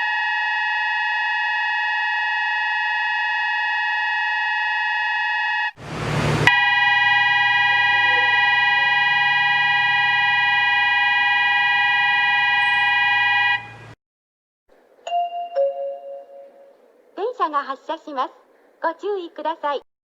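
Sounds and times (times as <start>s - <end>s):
electronic train departure bell: 6.5s - 14.0s, 15.1s - 16.8s.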